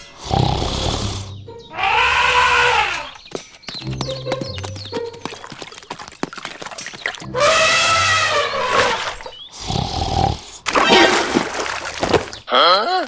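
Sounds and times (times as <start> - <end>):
animal cry: 0.9 - 3.2, 7.3 - 9.3.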